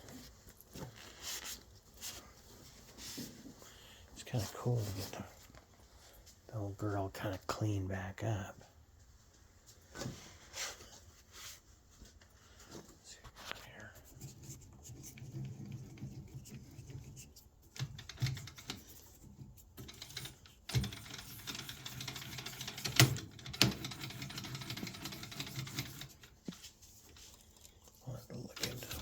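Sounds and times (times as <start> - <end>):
lathe parts clicking and clattering: 19.8 - 26.4.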